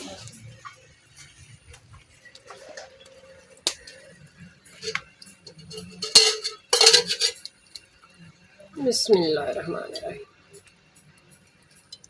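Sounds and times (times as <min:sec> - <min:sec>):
utensils clattering: 0:04.7 - 0:07.8
utensils clinking and knocking: 0:04.7 - 0:07.8.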